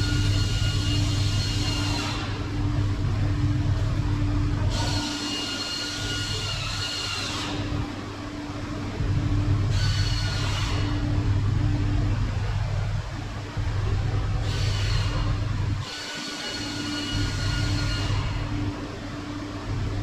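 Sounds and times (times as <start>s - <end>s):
high whine: 0.0s - 20.0s
machine humming: 0.0s - 20.0s.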